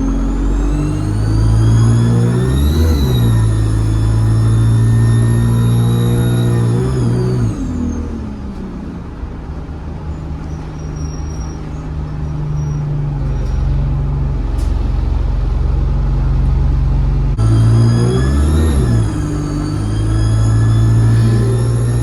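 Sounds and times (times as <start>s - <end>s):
turbo whistle: 0.0s - 8.2s, 17.4s - 22.0s
bus diesel engine droning: 0.0s - 22.0s.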